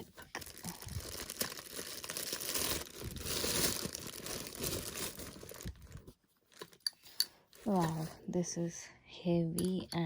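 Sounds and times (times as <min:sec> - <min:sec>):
packaging wrap crinkling and tearing: 0:00.2 - 0:06.8.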